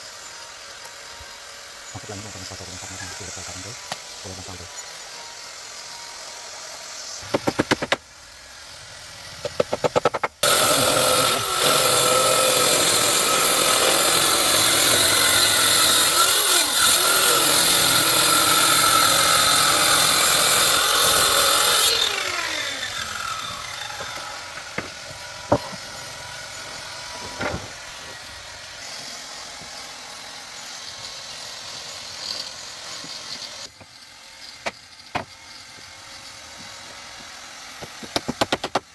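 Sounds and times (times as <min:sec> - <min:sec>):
electric power tool running: 0:00.0 - 0:37.9
motor whining down: 0:16.6 - 0:29.0.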